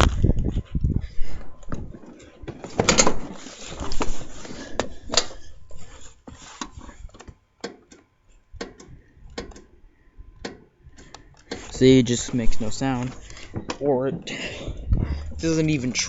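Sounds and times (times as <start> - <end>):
rubbing and rustling: 1.8 - 4.8.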